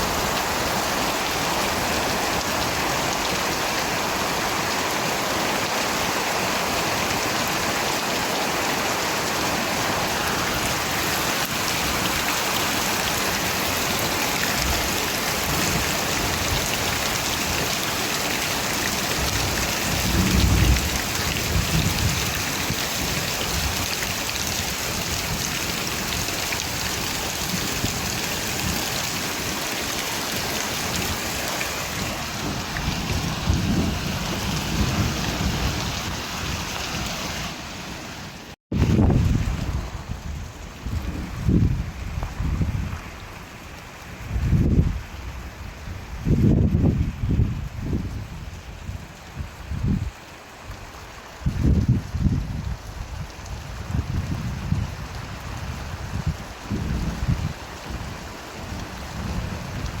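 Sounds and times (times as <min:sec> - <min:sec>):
dense rainfall: 0:00.0 - 1:00.0
thunder rumbling: 0:19.2 - 0:29.6, 0:30.8 - 0:37.1.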